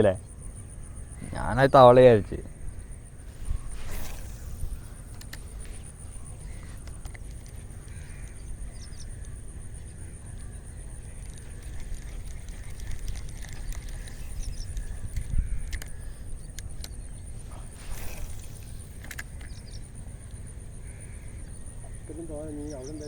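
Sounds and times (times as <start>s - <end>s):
faint bird calls: 0.0s - 23.0s
wind rumble on microphone: 2.4s - 20.1s.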